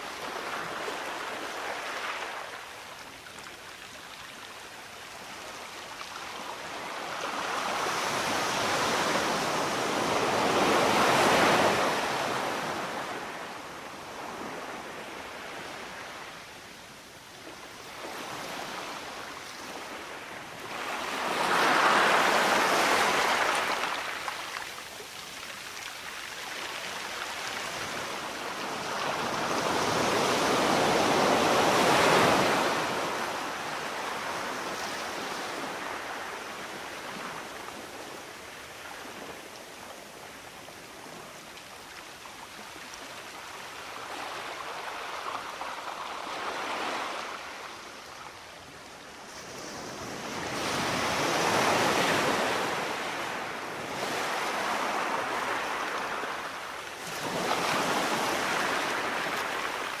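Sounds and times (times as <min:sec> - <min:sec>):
sea waves breaking: 0:17.9 - 0:37.4.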